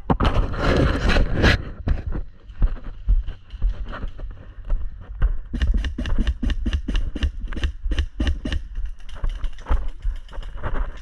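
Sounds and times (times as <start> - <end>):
airsoft gun rapid shots: 5.6 - 8.7.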